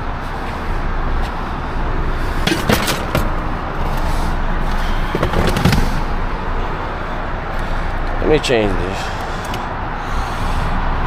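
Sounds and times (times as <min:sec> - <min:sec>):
motor vehicle rumble: 0:00.0 - 0:11.0
sharp clicks and knocks: 0:02.4 - 0:03.4.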